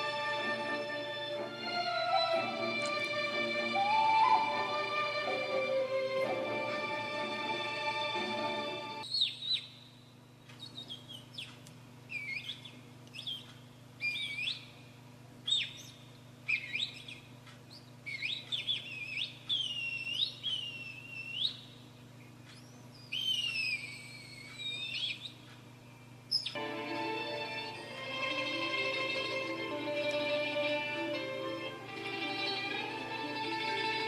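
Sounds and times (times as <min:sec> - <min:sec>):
faint low hum: 0:00.0 - 0:34.0
bird-like whistled calls: 0:09.1 - 0:09.8, 0:10.6 - 0:14.8, 0:15.4 - 0:21.8, 0:22.5 - 0:25.5.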